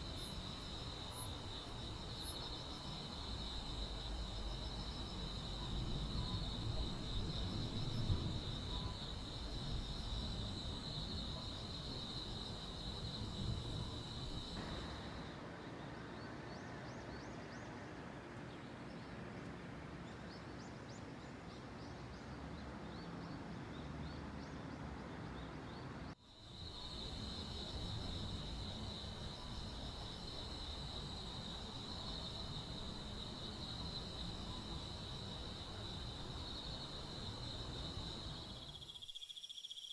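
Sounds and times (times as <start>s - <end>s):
crickets trilling: 0.0s - 15.4s, 26.2s - 39.9s
short high insect chirps: 37.5s - 39.9s.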